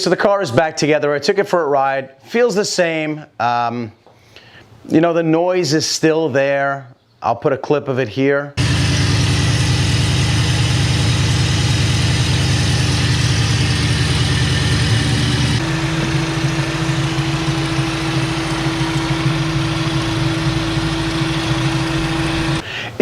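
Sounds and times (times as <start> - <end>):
car engine running: 8.6 - 22.6.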